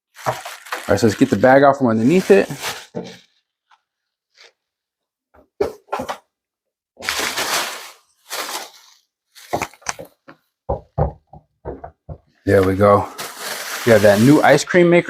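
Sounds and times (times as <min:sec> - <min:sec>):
packaging bag rustling: 0:00.1 - 0:04.6, 0:07.0 - 0:10.2, 0:12.5 - 0:14.6.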